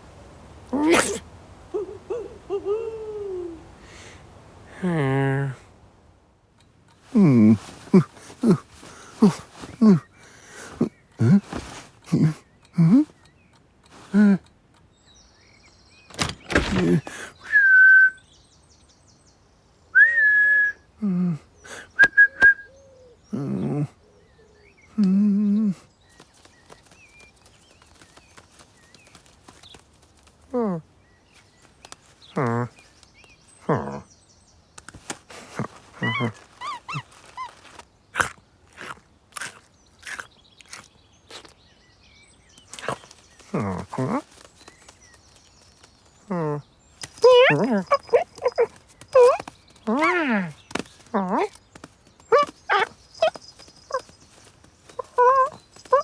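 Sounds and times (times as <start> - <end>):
short animal vocal sounds: 0.7 - 1.3
cartoon animal voice sounds: 0.7 - 3.7
scuffle of noise: 7.0 - 12.4, 34.9 - 37.9, 46.9 - 56.0
small chirps: 46.9 - 56.0.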